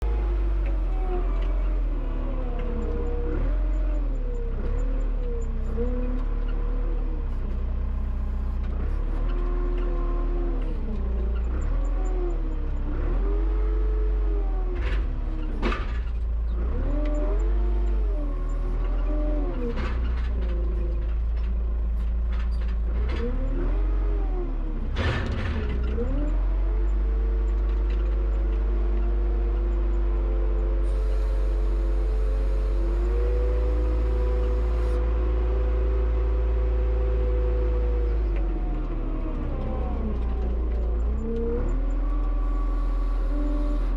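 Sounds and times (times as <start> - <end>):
tractor engine revving: 25.0 - 43.9.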